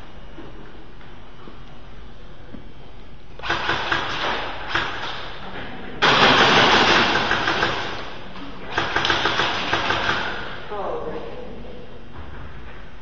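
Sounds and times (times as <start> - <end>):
electric airsoft guns firing: 3.4 - 10.7.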